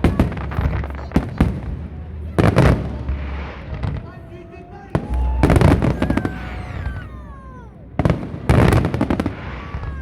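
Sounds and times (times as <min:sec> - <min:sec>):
fireworks crackling bangs: 0:00.0 - 0:07.3, 0:07.9 - 0:10.0
falling whistle tones: 0:04.9 - 0:07.7.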